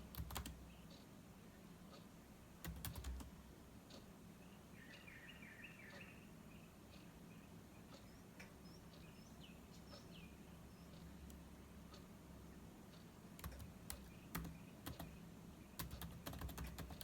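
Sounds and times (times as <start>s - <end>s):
birds twittering: 3.9s - 16.2s
high downward bird chirps: 4.4s - 11.1s.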